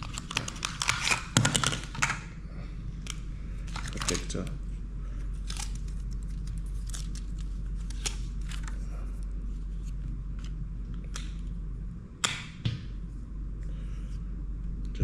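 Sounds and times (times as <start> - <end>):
plastic packaging clicks and crackles: 0.0 - 2.2, 3.0 - 4.5
steady low hum: 0.0 - 15.0.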